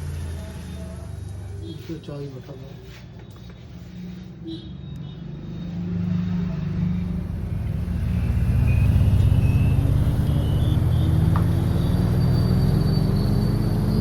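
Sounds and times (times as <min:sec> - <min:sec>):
vehicle engine running: 0:05.5 - 0:14.0.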